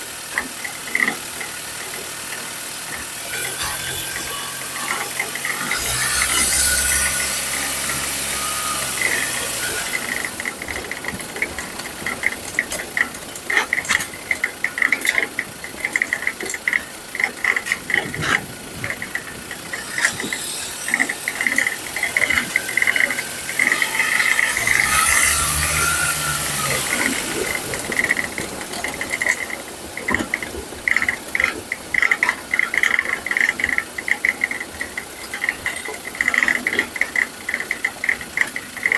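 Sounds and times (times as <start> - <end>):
road and engine rumble: 0.0 - 38.9
suspension knocking and rattling: 0.0 - 38.9
high squeak: 3.0 - 10.6, 19.8 - 28.4.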